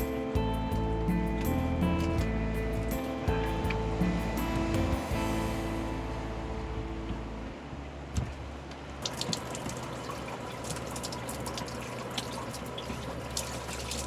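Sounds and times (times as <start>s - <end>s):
water running and dripping: 9.0s - 14.0s.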